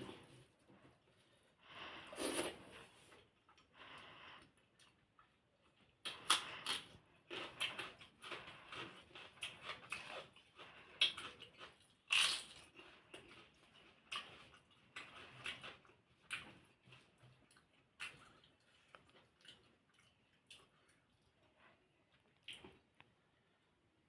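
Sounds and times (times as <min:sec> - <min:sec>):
crunchy chewing: 0:04.7 - 0:21.3.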